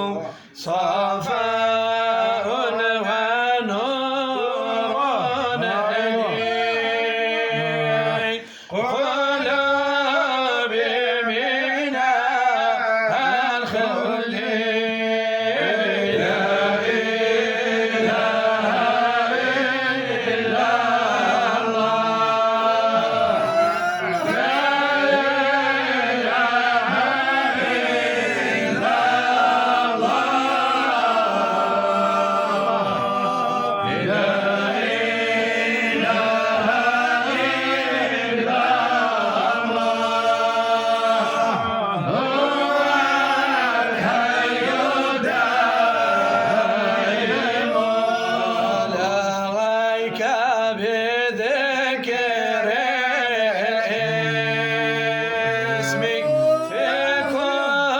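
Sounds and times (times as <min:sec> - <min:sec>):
person chanting melismatic phrases: 0:53.6 - 0:57.9.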